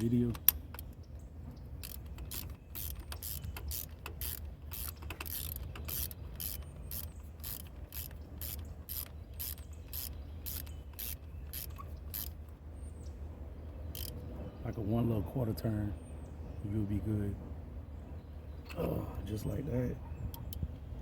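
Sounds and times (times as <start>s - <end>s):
socket ratchet clicking: 1.8s - 12.4s, 13.9s - 14.2s.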